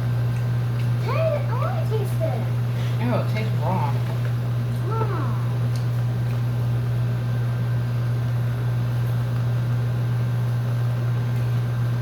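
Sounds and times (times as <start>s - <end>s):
steady low hum with hiss: 0.0s - 12.0s.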